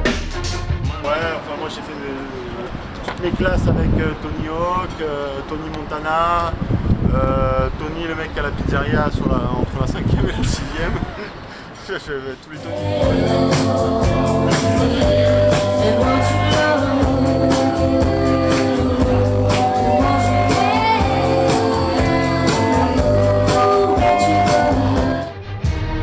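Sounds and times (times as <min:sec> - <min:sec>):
person singing: 0:12.6 - 0:25.4
beat and bass: 0:12.6 - 0:26.0.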